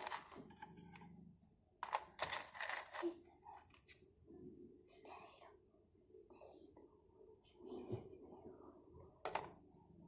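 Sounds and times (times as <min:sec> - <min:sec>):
shells clicking and rattling: 0:01.8 - 0:03.0.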